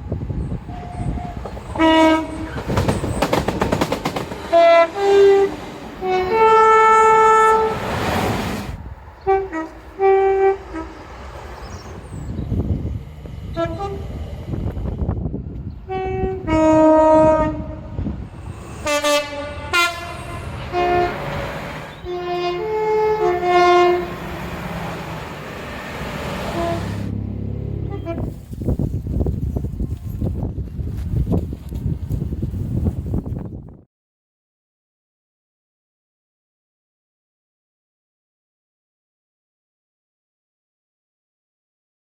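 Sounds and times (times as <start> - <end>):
trains passing rumble and clatter: 0.0 - 33.6
two-tone train horn blasts: 0.7 - 2.6, 4.5 - 7.8, 9.2 - 11.1, 13.5 - 14.2, 15.8 - 18.0, 18.7 - 24.4, 26.3 - 28.4.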